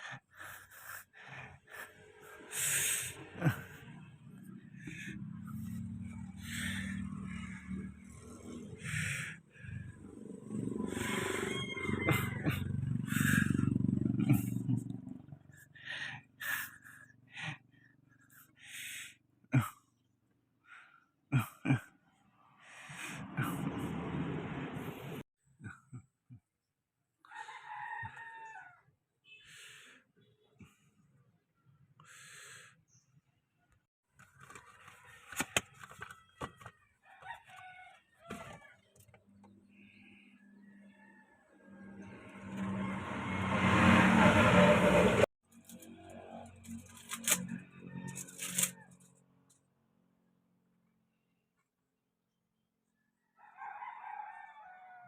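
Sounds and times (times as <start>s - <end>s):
rooster crowing: 10.7s - 13.6s, 27.3s - 28.9s, 37.0s - 38.8s, 39.9s - 44.7s, 53.2s - 55.0s.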